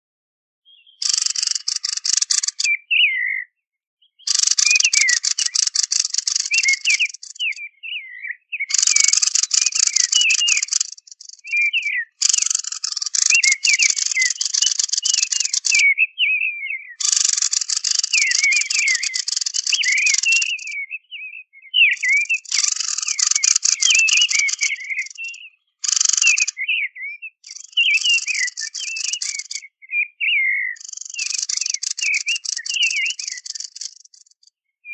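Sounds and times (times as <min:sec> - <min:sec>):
recorded birdsong with buzzy chatter: 0:00.6 - 0:34.9
quick twisting whistled notes: 0:01.0 - 0:02.8, 0:04.3 - 0:07.7, 0:08.6 - 0:15.9, 0:17.0 - 0:20.8, 0:21.8 - 0:26.7, 0:27.5 - 0:29.7, 0:30.8 - 0:34.1.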